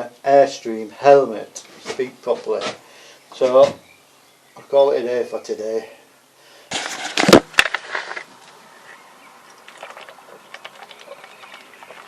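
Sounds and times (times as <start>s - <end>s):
water bottle rustling: 9.5s - 12.0s.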